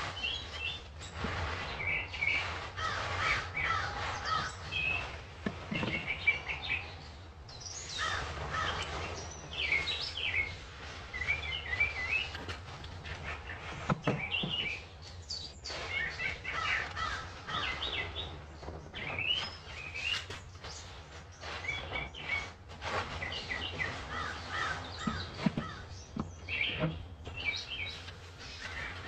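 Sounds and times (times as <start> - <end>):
birds chirping and calling: 0.0 - 29.0.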